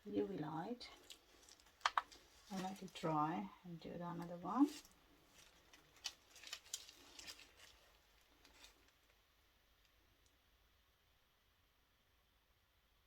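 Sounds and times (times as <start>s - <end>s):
small objects clicking and tapping: 1.0s - 2.9s, 4.8s - 7.8s.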